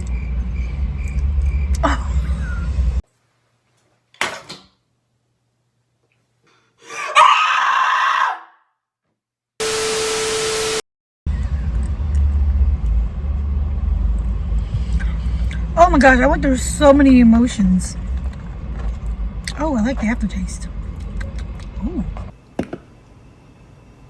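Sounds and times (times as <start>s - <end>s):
low background noise: 11.3s - 24.0s.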